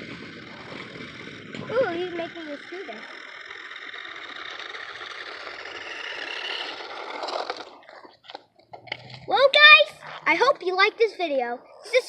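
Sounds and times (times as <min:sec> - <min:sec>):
toy car motor whirring: 0:00.0 - 0:12.0
wheels scraping: 0:00.0 - 0:12.0.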